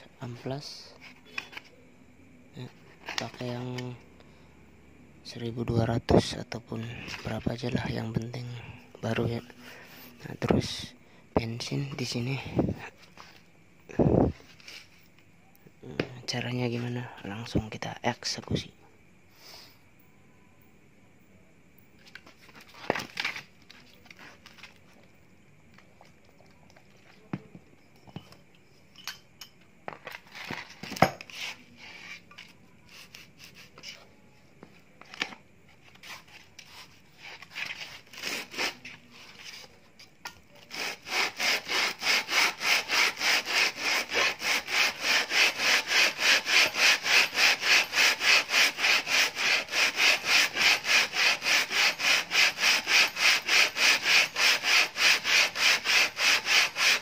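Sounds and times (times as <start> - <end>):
parts knocking and clattering: 27.3 - 31.3
metal rubbed on wet sandpaper: 32.8 - 34.0, 35.9 - 39.8, 40.7 - 57.0.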